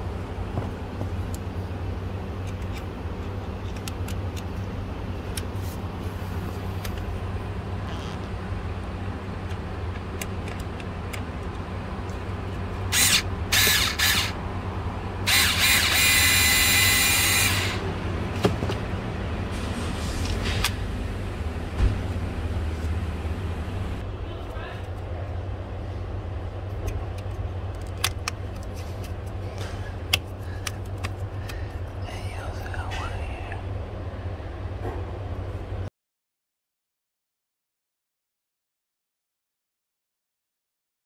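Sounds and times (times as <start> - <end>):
steady low hum: 0.0 - 35.9
power drill whirring: 12.9 - 14.4, 15.3 - 17.8.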